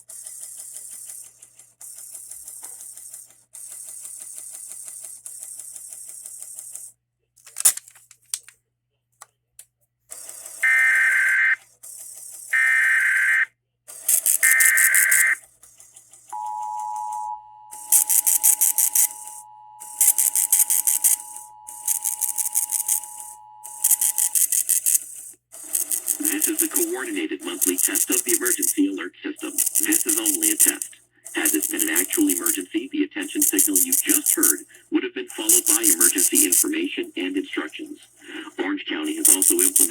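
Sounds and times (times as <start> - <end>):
screeching data bursts: 10.6 - 11.6, 12.6 - 13.5, 14.1 - 15.4, 16.4 - 39.9
two-tone alert signal buzz: 10.6 - 11.6, 12.6 - 13.5, 14.1 - 15.4, 16.4 - 25.0, 25.7 - 28.8, 39.1 - 39.9
rhythmic crackle: 16.4 - 39.9.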